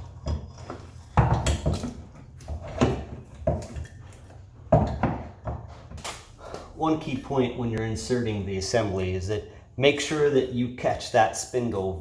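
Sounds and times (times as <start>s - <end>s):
metal parts knocking and clunking: 0.0s - 6.0s.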